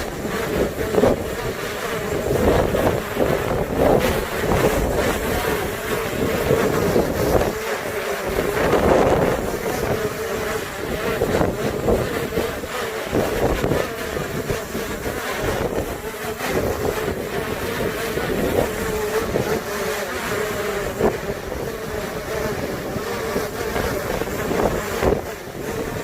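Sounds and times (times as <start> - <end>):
drone propellers humming: 0.0 - 26.0
wind buffeting microphone: 0.0 - 26.0.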